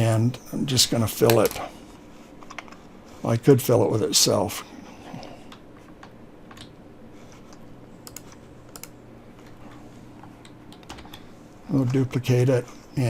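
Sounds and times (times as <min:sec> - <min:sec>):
faint steady hum: 0:00.0 - 0:13.0
computer keyboard keys clicking: 0:05.5 - 0:06.8, 0:08.0 - 0:09.6, 0:10.4 - 0:11.2.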